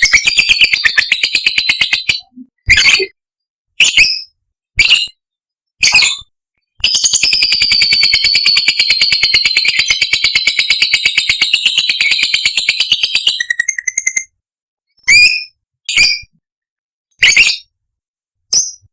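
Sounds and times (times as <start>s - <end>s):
lovebird chattering trill: 6.9s - 14.3s.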